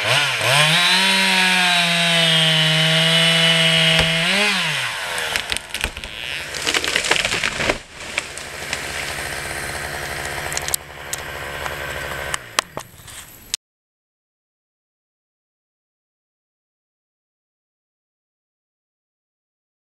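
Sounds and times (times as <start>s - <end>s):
chainsaw engine: 0.0s - 13.3s
crackling and knocks: 3.8s - 4.4s, 5.2s - 12.9s.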